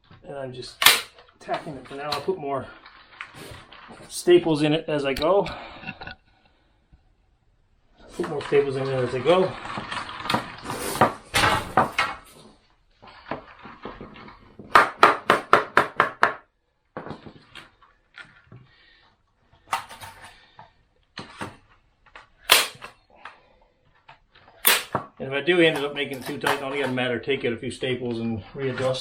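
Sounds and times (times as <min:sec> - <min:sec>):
staple gun clicks: 0:00.8 - 0:01.1, 0:22.5 - 0:22.9, 0:24.6 - 0:24.9
wire handling noise: 0:19.5 - 0:27.1.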